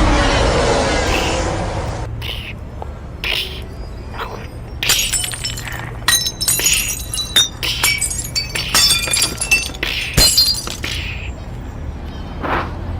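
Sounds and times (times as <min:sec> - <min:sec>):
glass shattering: 0:04.8 - 0:11.4.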